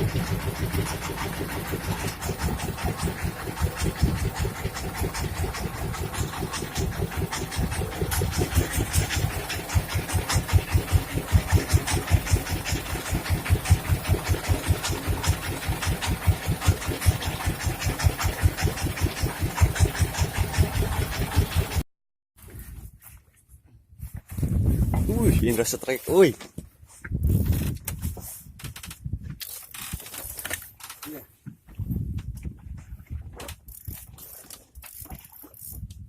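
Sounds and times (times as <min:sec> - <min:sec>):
boat engine thumping: 0:00.0 - 0:21.8.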